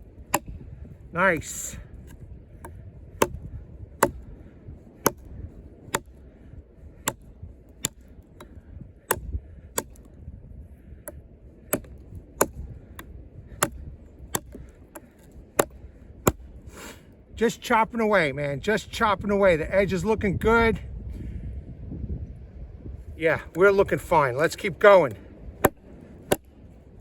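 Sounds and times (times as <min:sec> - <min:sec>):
knife chopping into log: 0:02.0 - 0:04.3, 0:05.0 - 0:05.3, 0:05.9 - 0:06.2, 0:07.0 - 0:08.5, 0:09.1 - 0:10.1, 0:11.1 - 0:16.4, 0:25.6 - 0:26.5.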